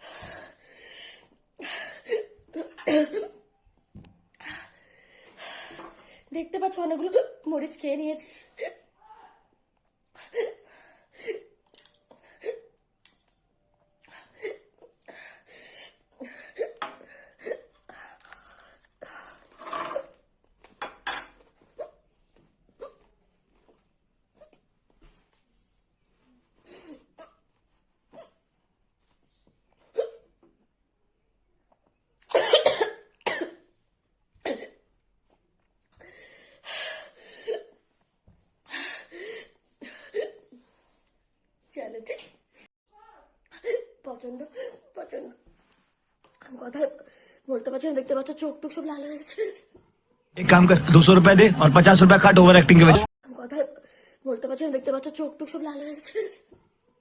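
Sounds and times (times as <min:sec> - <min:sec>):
soft breathy huffs: 0:00.0 - 0:02.3, 0:04.4 - 0:06.3, 0:47.0 - 0:47.5, 0:53.8 - 0:54.2
woman coughing sharply: 0:02.8 - 0:03.4, 0:32.3 - 0:33.6.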